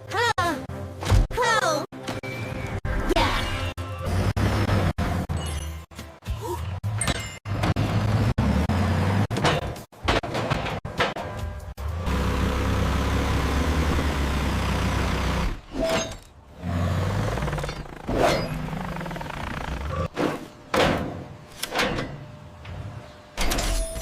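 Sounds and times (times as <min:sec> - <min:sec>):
heavy vehicle engine rumbling: 0:11.5 - 0:15.7.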